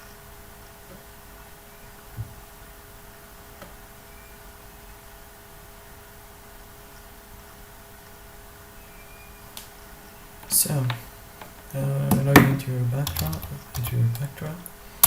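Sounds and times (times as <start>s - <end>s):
faint background hiss: 0.0s - 15.0s
steady electrical hum: 0.0s - 15.0s
soft low thump: 2.1s - 2.5s.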